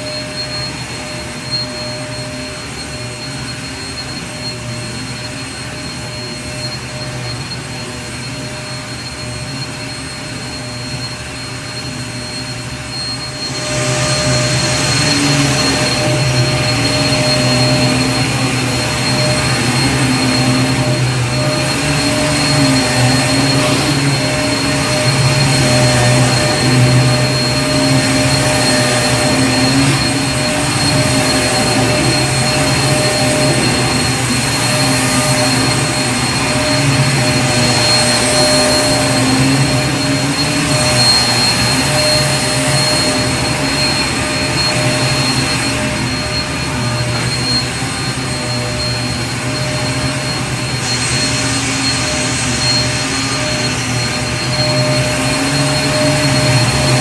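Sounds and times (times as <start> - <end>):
vacuum cleaner running: 0.0 - 57.0.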